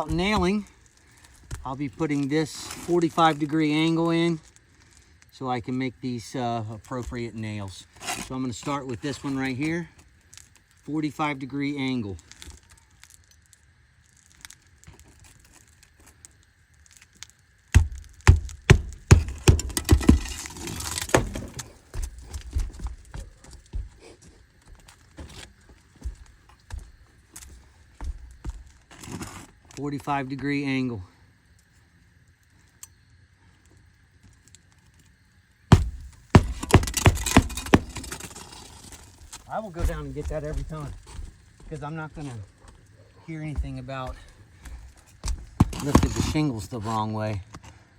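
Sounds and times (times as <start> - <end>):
hammer striking roofing nail: 0.0 - 0.6, 17.7 - 22.1, 35.7 - 38.3.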